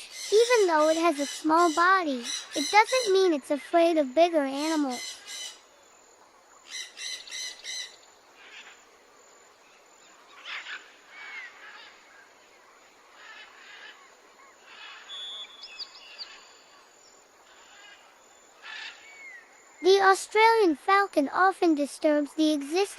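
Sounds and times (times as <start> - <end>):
harsh repeated bird calls: 0.0 - 5.6, 6.6 - 8.8
bird chirps: 14.9 - 17.2.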